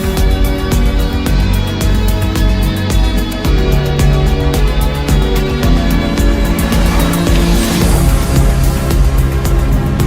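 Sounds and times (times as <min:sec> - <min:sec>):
dramatic soundtrack music: 0:03.4 - 0:10.0
rushing whoosh: 0:05.9 - 0:09.5.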